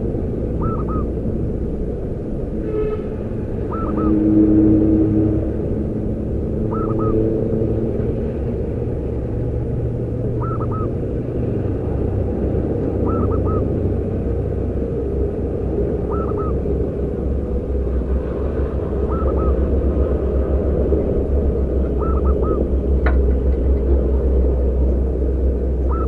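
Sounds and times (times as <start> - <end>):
steady low rumble: 0.0 - 26.0
dove cooing: 0.6 - 1.1, 3.7 - 4.2, 6.7 - 7.3, 10.4 - 11.0, 13.0 - 13.7, 16.0 - 16.7, 19.0 - 19.7, 21.9 - 22.7.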